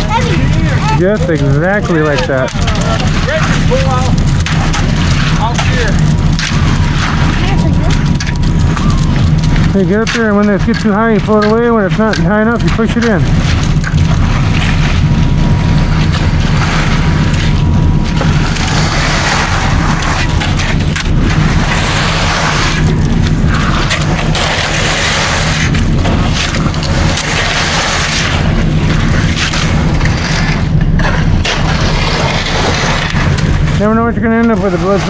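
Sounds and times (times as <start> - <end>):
truck engine drone: 0.0 - 35.0
concrete scraping down chute: 15.8 - 35.0.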